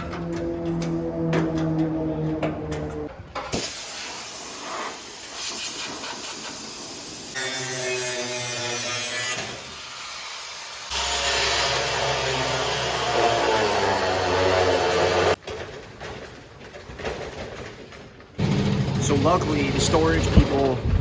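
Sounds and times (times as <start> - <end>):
loud steady cutting hiss: 3.6 - 15.4.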